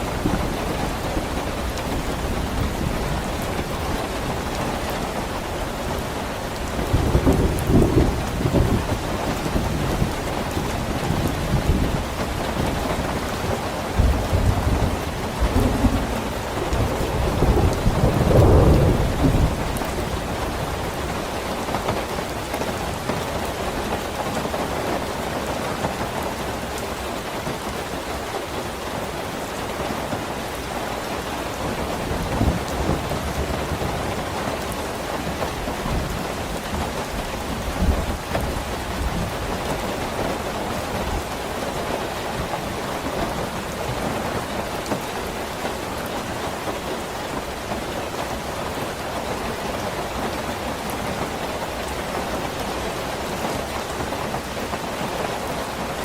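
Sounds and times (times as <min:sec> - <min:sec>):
thunder rumbling: 0:00.0 - 0:21.8
heavy rain: 0:00.0 - 0:56.0.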